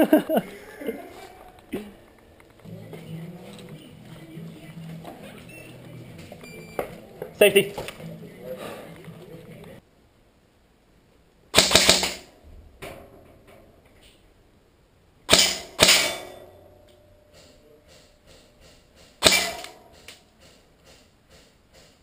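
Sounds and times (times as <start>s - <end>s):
airsoft gun bursts: 11.5s - 12.3s, 15.3s - 16.3s, 19.2s - 20.1s.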